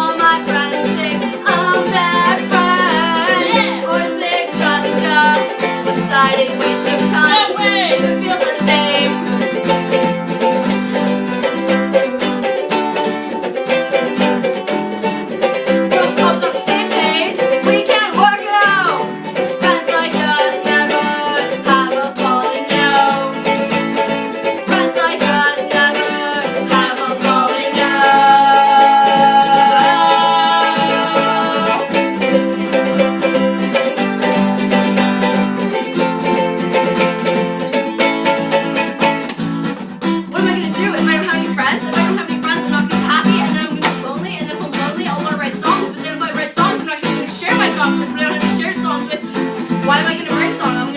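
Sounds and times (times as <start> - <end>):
band song with plucked strings: 0.0 - 50.9.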